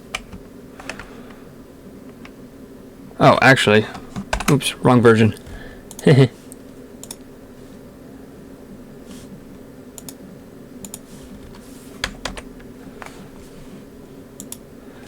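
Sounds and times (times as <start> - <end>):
steady low hum: 0.0 - 15.0
keyboard and mouse clicks: 0.1 - 1.1, 4.2 - 4.6, 5.9 - 7.2, 10.0 - 10.2, 10.8 - 13.2, 14.4 - 14.6.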